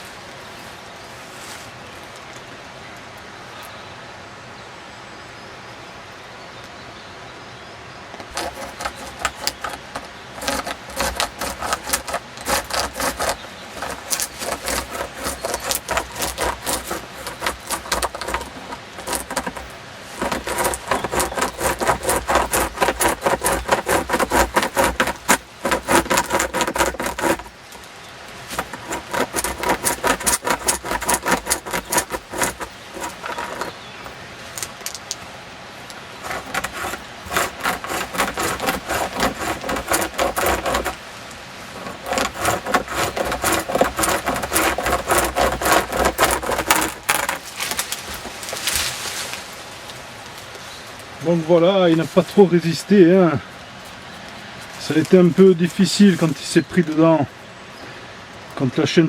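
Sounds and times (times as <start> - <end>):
hand chain saw rasping through wood: 8.3 - 35.0, 36.2 - 41.0, 41.7 - 49.3.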